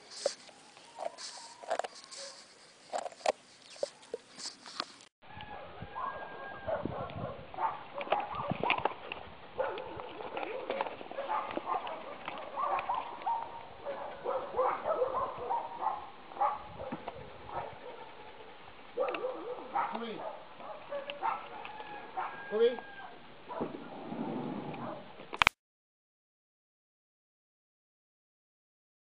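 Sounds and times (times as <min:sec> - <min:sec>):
dog chewing a bone: 0:00.0 - 0:05.1, 0:07.9 - 0:14.8.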